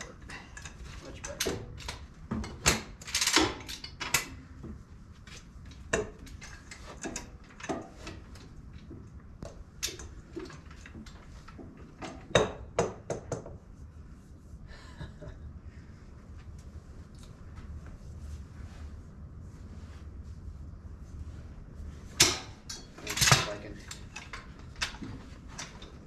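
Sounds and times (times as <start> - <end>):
metal tools clinking and clanking: 0.0 - 4.4, 6.0 - 8.5, 22.2 - 26.0.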